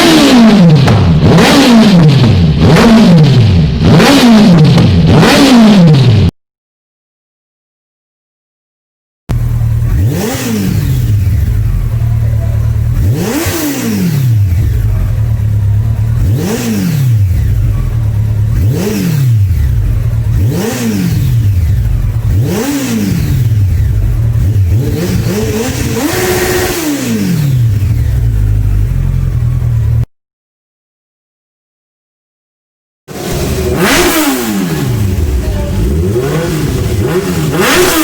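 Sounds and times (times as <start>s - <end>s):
motorcycle engine revving: 0.0s - 6.3s, 9.3s - 30.1s, 33.1s - 38.0s
motorcycle engine idling: 9.3s - 30.1s, 33.1s - 37.8s.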